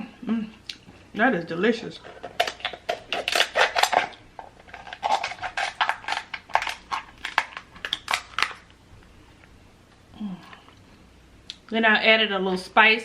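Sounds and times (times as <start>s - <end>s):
crab shell crunching while eating: 2.0s - 8.8s.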